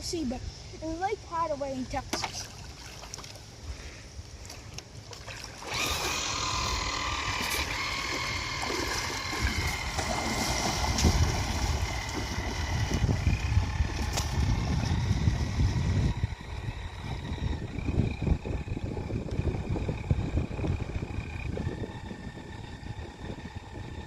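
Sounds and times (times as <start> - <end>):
model boat motor whine: 4.9 - 24.0.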